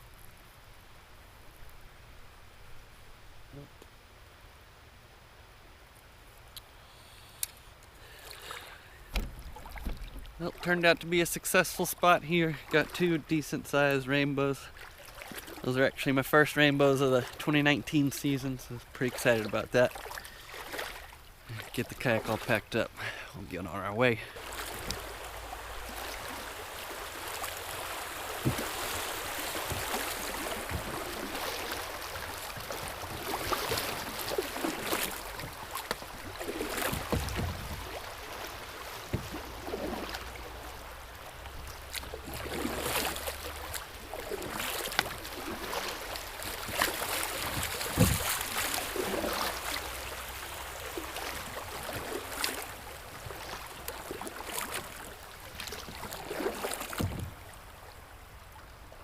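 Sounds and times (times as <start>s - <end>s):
river water splashing and gurgling: 0.0s - 59.0s
knocks against kayak hull: 9.1s - 10.3s, 28.4s - 28.8s, 36.7s - 38.0s, 39.0s - 39.4s, 47.5s - 48.4s, 57.0s - 57.4s.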